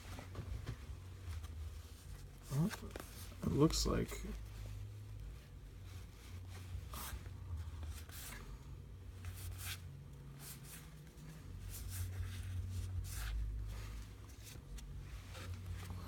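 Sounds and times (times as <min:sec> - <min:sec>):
cardboard cards rustling: 0:00.0 - 0:05.2
low steady hum: 0:00.0 - 0:16.0.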